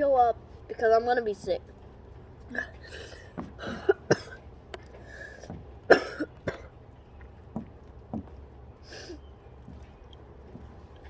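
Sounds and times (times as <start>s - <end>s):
person coughing: 3.6s - 4.4s, 5.9s - 6.7s.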